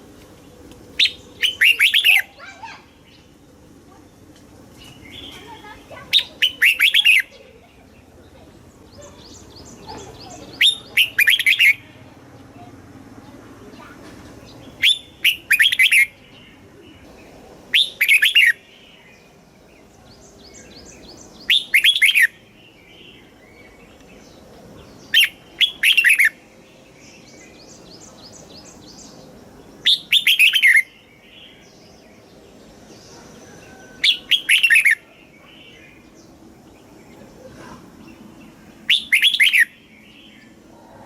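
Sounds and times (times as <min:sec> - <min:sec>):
soft high bird twittering: 0:00.7 - 0:41.0
bird whistled song phrases: 0:01.0 - 0:03.2, 0:06.1 - 0:07.4, 0:09.9 - 0:11.8, 0:14.8 - 0:16.3, 0:17.7 - 0:18.6, 0:21.4 - 0:22.4, 0:25.1 - 0:26.4, 0:29.8 - 0:31.7, 0:33.8 - 0:35.9, 0:38.9 - 0:40.5.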